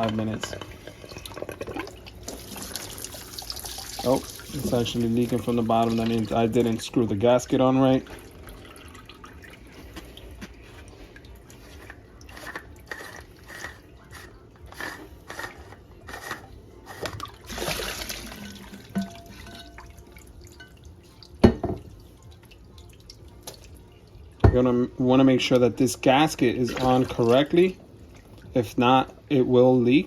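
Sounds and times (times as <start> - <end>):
water dripping and splashing: 1.0 - 6.8, 17.2 - 24.4.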